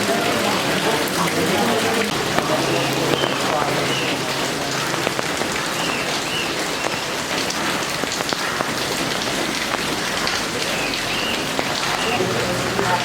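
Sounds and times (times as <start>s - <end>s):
heavy rain falling: 0.0s - 13.0s
raindrops ticking on surfaces: 0.0s - 13.0s.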